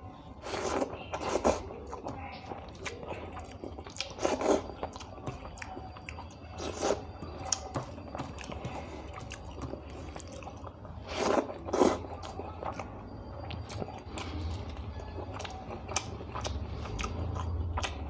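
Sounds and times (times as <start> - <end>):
person chewing food: 0.0 - 18.0.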